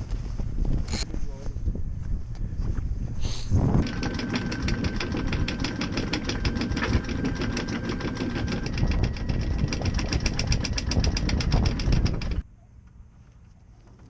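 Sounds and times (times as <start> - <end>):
boat engine running: 3.8 - 12.4.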